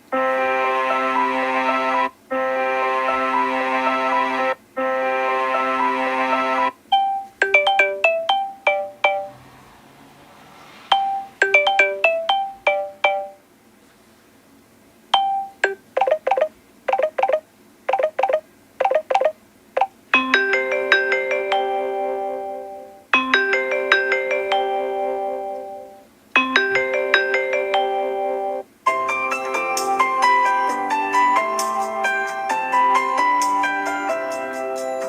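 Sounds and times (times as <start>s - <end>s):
phone ringtone held chord: 0.2s - 9.4s, 10.9s - 13.4s, 15.2s - 17.4s, 20.2s - 35.0s
quick pattern of short notes: 5.6s - 9.4s
mallet-like ringtone melody: 6.9s - 9.5s, 10.9s - 13.4s, 15.2s - 19.4s, 20.2s - 35.0s.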